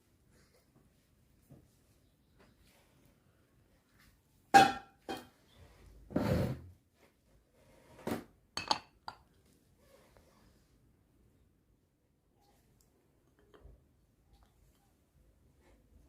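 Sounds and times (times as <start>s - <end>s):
kitchenware clinking: 8.6s - 9.3s.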